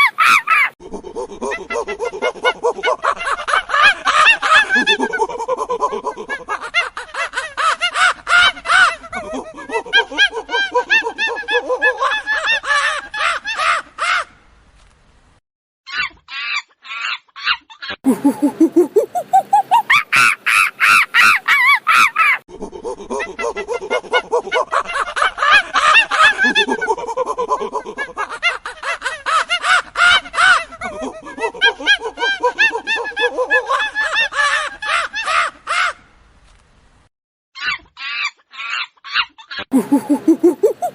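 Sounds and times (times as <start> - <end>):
monkeys hooting and screeching: 0.0 - 5.2, 15.9 - 26.9, 37.6 - 40.9.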